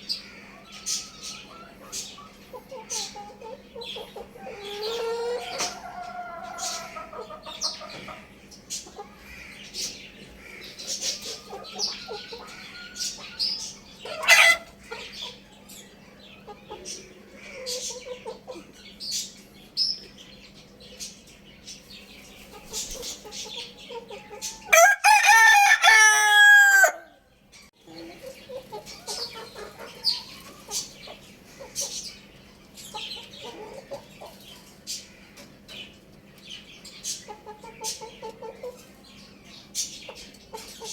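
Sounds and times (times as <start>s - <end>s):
chickens clucking: 0.0s - 40.9s
loud chicken squawk: 4.2s - 8.3s, 14.0s - 15.0s, 24.1s - 27.2s
rooster crowing: 4.5s - 7.0s, 24.7s - 27.2s.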